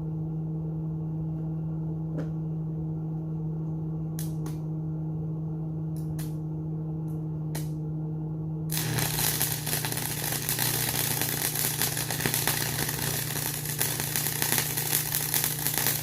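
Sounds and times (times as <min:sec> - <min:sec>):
welding machine humming: 0:08.7 - 0:16.0.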